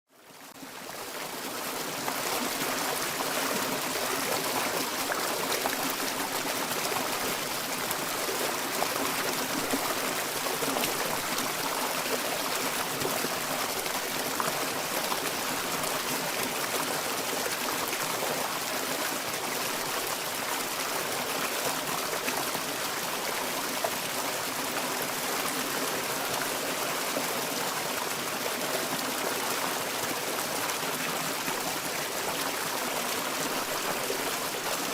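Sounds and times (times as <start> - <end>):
turbulent water rushing and splashing: 0.6 - 34.9.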